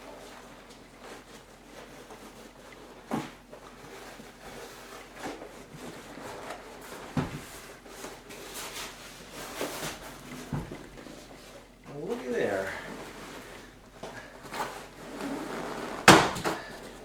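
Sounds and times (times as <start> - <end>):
handling noise: 5.1 - 17.0.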